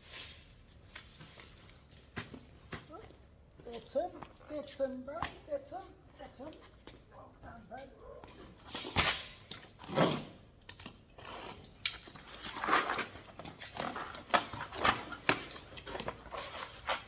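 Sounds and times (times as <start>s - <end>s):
boxes rustling: 11.2s - 17.0s.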